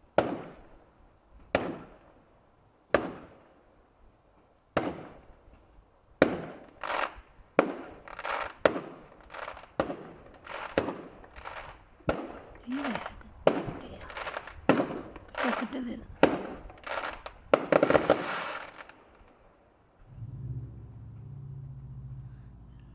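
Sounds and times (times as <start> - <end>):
distant firework bangs: 0.1 - 0.7, 1.5 - 2.0, 2.9 - 3.4, 4.8 - 5.3, 6.2 - 19.4
firework crackling: 6.3 - 19.4.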